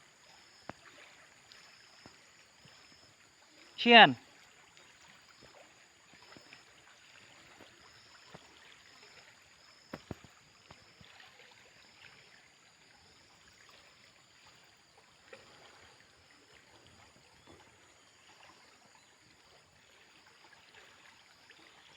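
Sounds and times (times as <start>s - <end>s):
river water flowing: 0.0s - 21.9s.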